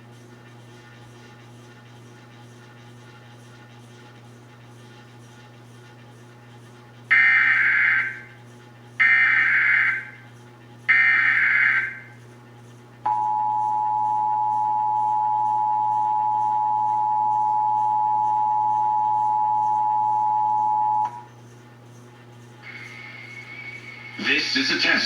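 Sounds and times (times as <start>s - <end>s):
two-tone attention signal: 13.1s - 21.2s.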